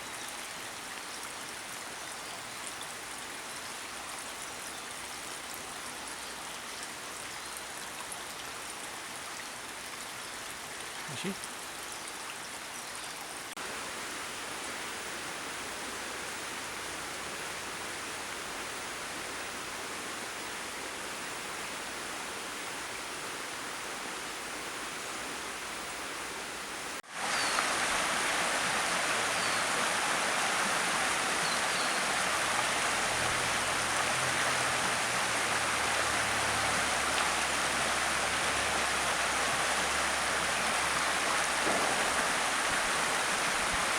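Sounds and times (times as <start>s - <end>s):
river water rushing: 26.6s - 43.9s.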